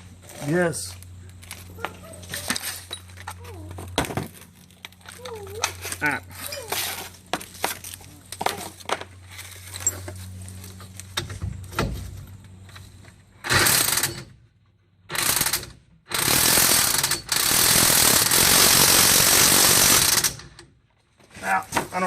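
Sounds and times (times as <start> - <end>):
metal parts clinking: 1.4 - 10.9.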